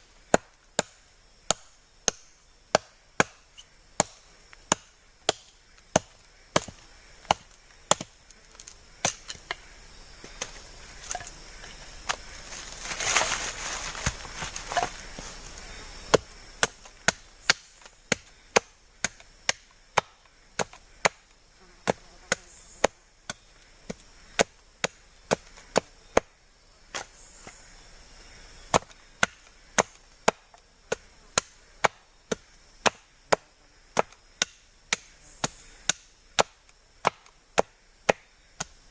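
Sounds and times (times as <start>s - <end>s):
blade chopping wood: 4.0s - 8.2s, 9.0s - 9.6s, 12.1s - 15.0s, 16.1s - 26.3s, 28.7s - 38.9s.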